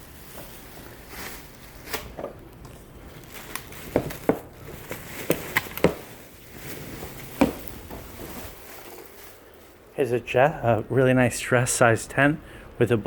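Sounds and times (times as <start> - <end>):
light fabric rustling: 3.2 - 10.0.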